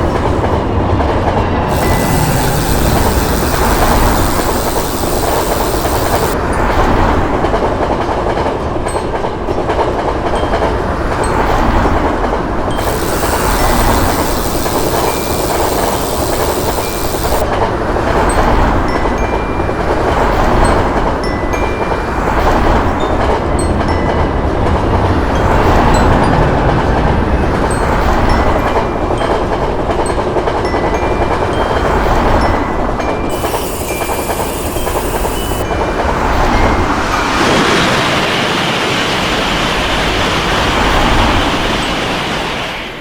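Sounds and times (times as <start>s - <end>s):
high hiss: 1.7s - 6.4s, 12.8s - 17.4s, 33.3s - 35.6s
faint crossing warning bell: 1.7s - 6.5s, 12.7s - 17.4s, 18.8s - 38.0s.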